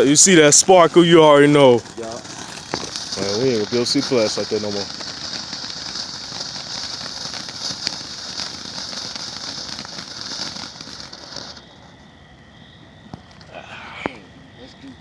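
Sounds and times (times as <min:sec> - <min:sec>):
sparkler crackling hiss: 0:00.0 - 0:12.0.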